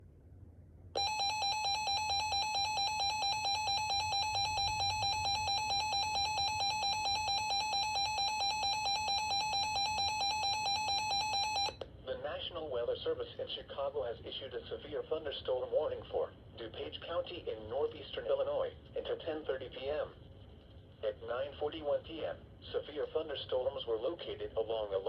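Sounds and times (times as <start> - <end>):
warbling electronic alert tone: 1.0 - 11.8.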